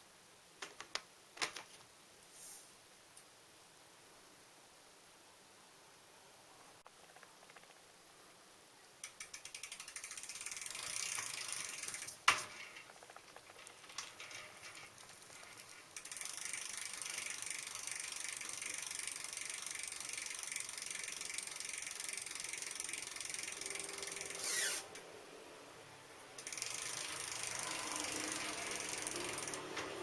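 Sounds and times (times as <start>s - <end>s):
bicycle freewheel ratchet clicking: 9.0s - 25.1s, 26.4s - 30.0s.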